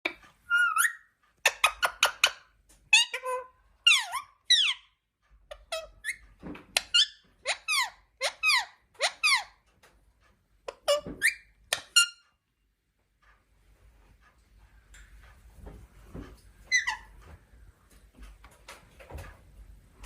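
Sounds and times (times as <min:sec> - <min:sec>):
parrot squawking: 0:00.5 - 0:04.9, 0:06.8 - 0:09.6, 0:16.7 - 0:17.1.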